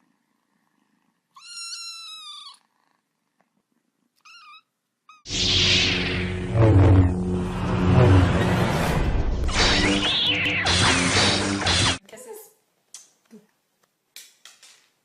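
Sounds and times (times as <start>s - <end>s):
cat purring: 0.0s - 1.3s
cat meowing: 1.4s - 2.6s, 4.2s - 5.3s
loud burst of noise: 5.3s - 12.0s.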